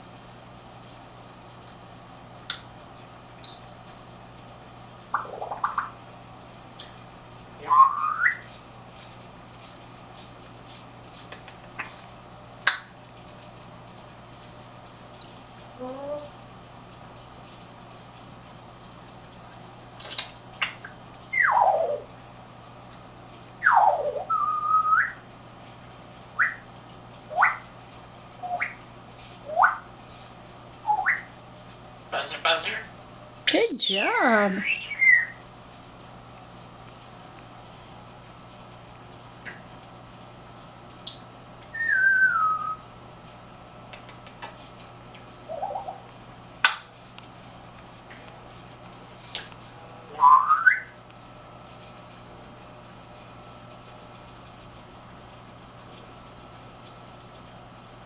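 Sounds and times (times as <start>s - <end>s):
parrot whistling: 3.4s - 3.8s, 7.6s - 8.5s, 21.3s - 22.1s, 23.6s - 25.2s, 26.4s - 26.6s, 27.3s - 27.6s, 28.4s - 28.8s, 29.4s - 29.9s, 30.8s - 31.3s, 34.6s - 35.4s, 41.7s - 42.8s, 45.5s - 46.0s, 50.2s - 51.0s
short rising chirps: 3.4s - 3.8s.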